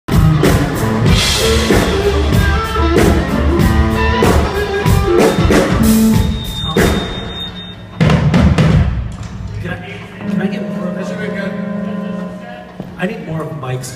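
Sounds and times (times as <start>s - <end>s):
electric guitar: 0.1s - 6.4s
bass guitar: 0.1s - 8.0s
drum kit beating: 0.1s - 10.7s.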